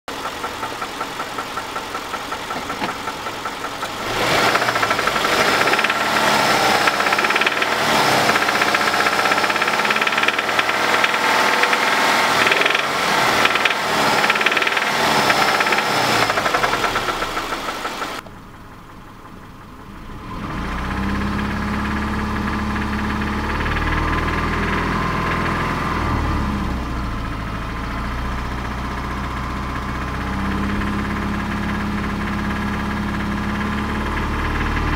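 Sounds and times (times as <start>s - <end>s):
car engine knocking and revving: 0.1s - 34.9s.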